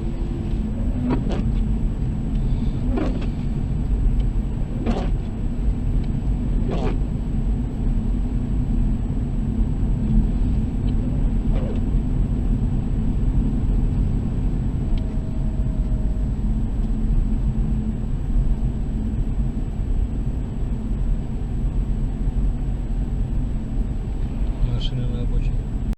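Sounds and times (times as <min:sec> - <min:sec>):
car engine and tyre rumble: 0:00.0 - 0:25.9.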